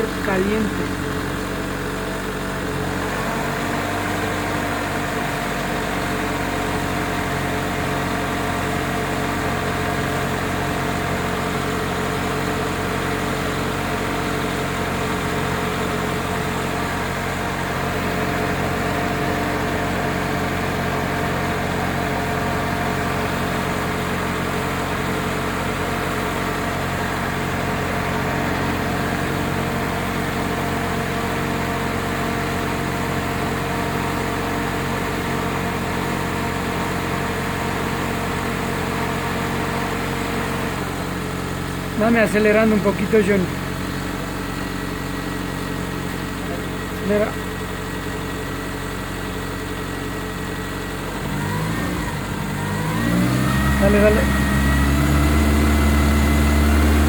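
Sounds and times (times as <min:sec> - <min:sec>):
car engine idling: 0:00.0 - 0:57.0.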